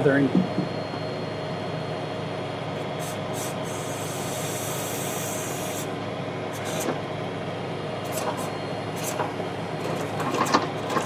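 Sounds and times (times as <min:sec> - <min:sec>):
tractor engine running: 0:02.2 - 0:11.0
hydraulic hiss: 0:03.0 - 0:05.9.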